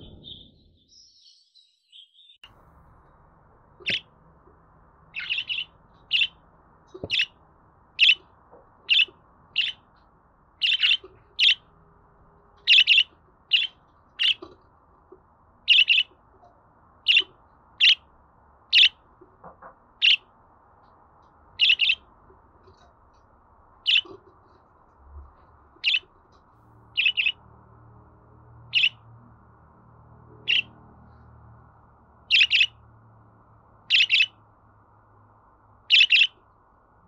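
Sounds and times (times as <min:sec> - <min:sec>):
budgerigar chirping: 0:03.8 - 0:04.1, 0:05.1 - 0:06.4, 0:07.0 - 0:07.4, 0:08.0 - 0:08.3, 0:08.9 - 0:09.9, 0:10.6 - 0:11.7, 0:12.6 - 0:14.6, 0:15.6 - 0:16.2, 0:17.0 - 0:18.1, 0:18.7 - 0:19.0, 0:20.0 - 0:20.3, 0:21.6 - 0:22.1, 0:23.8 - 0:24.2, 0:25.8 - 0:26.1, 0:26.9 - 0:27.4, 0:28.7 - 0:29.0, 0:30.4 - 0:30.8, 0:32.3 - 0:32.8, 0:33.8 - 0:34.4, 0:35.9 - 0:36.4.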